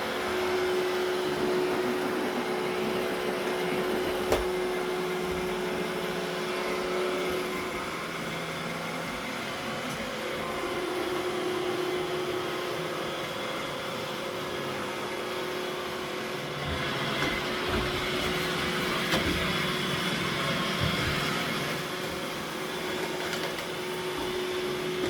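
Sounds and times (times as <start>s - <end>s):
robot vacuum motor hum: 0.0s - 8.4s.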